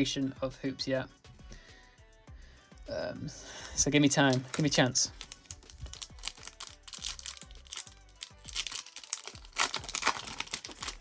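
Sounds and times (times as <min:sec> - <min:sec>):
foil wrapper crinkling and tearing: 0:03.6 - 0:11.0.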